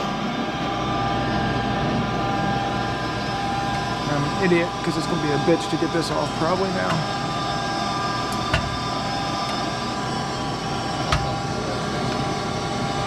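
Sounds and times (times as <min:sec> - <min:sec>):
gas furnace humming: 0:00.0 - 0:13.0
sharp knocks: 0:08.5 - 0:08.8.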